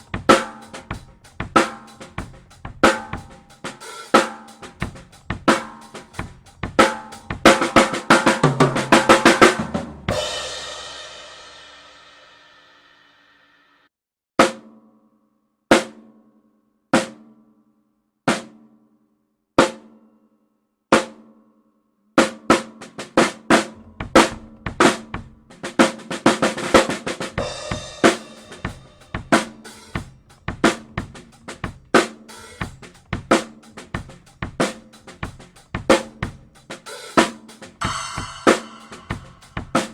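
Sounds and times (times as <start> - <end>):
snare drum fills: 0.0 - 11.4, 22.2 - 39.9
drum kit beat with cymbals: 0.0 - 13.4, 22.2 - 39.9
cymbal crash ringing: 37.8 - 39.8.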